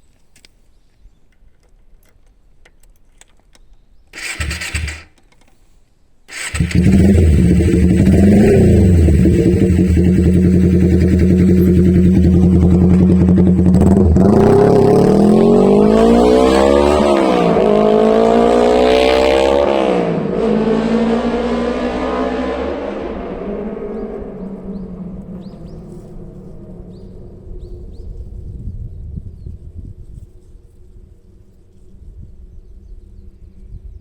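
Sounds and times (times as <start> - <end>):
motorcycle engine revving: 4.2 - 5.2, 6.3 - 25.8.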